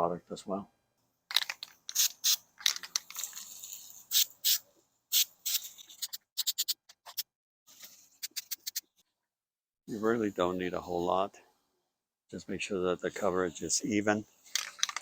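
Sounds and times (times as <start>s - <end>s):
spray can ball rattling: 1.3s - 7.2s, 8.2s - 8.8s, 14.4s - 15.0s
spray can hiss: 1.8s - 2.4s, 3.1s - 7.2s, 8.2s - 8.8s.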